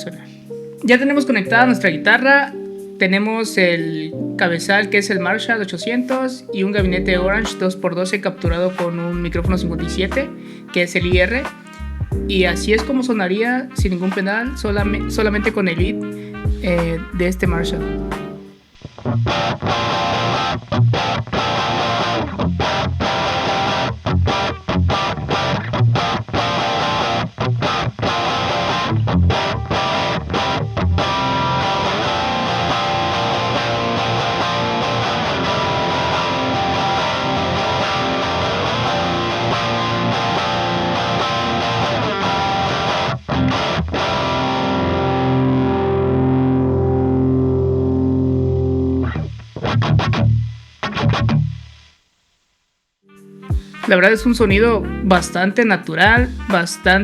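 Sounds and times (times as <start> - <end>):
distorted electric guitar: 0.0 - 52.0, 53.1 - 57.0.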